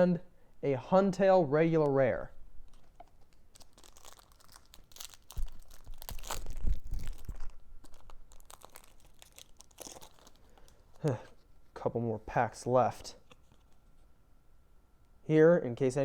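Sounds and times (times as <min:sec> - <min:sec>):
foil wrapper crinkling and tearing: 0:02.7 - 0:11.2.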